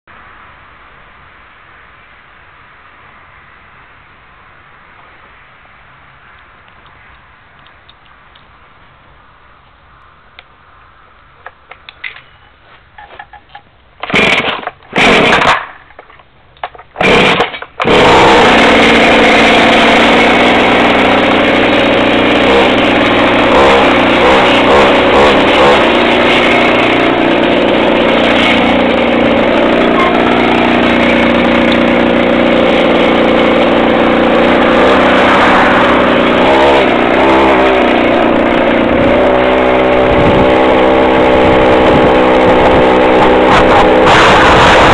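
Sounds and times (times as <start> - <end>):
two-stroke engine starting and running: 13.0 - 44.9.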